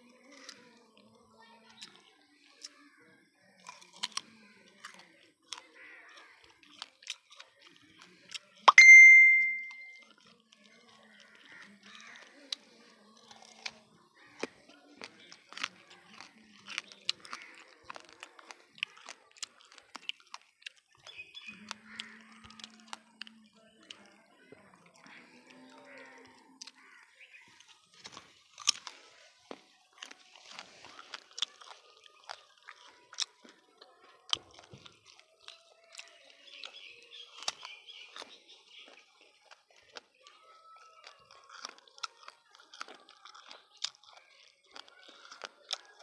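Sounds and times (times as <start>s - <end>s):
person chewing crisp fruit: 0.0s - 46.0s
sharp crunches and clicks: 0.2s - 2.8s, 3.5s - 8.7s, 9.6s - 46.0s.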